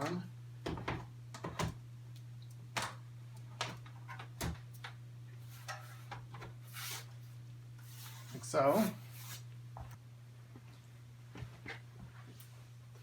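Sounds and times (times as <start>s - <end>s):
steady low hum: 0.0s - 13.0s
short scrape: 6.7s - 7.1s, 7.8s - 9.4s.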